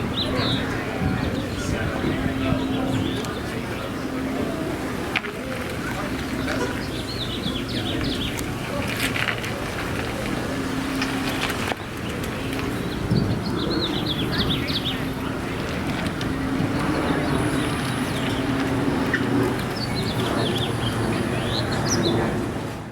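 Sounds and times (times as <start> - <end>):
street traffic hum: 0.0 - 22.9.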